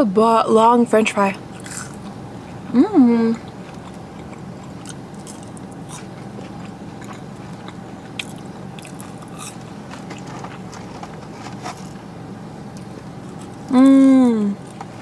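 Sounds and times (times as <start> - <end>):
low room hum: 0.0 - 15.0
chewing crunchy food: 1.4 - 2.7, 3.4 - 12.0, 12.7 - 15.0.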